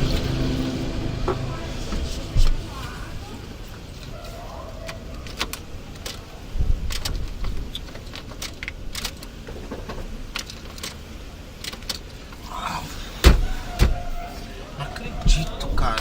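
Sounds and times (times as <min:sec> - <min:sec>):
heavy thump: 0:00.0 - 0:03.3
steady low rumble: 0:00.0 - 0:03.7.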